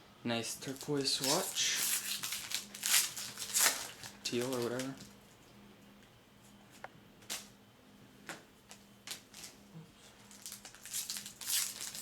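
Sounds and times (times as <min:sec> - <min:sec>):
faint steady hum: 0:00.0 - 0:12.0
papery rustling of cards: 0:00.6 - 0:05.1, 0:08.7 - 0:12.0.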